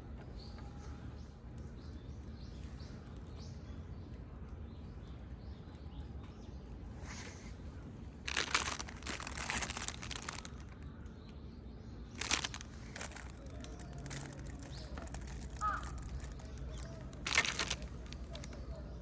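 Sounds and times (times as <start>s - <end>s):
bird chirp: 0.2s - 19.0s
crinkling handling noise: 7.0s - 11.2s, 12.1s - 19.0s.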